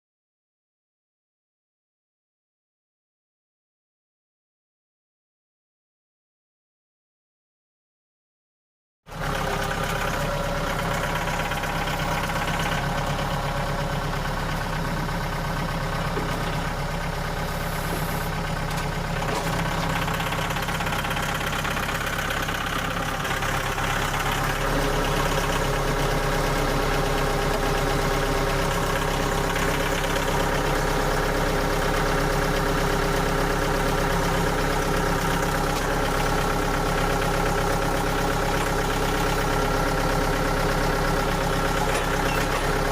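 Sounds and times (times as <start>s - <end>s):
engine idling: 9.1s - 42.9s.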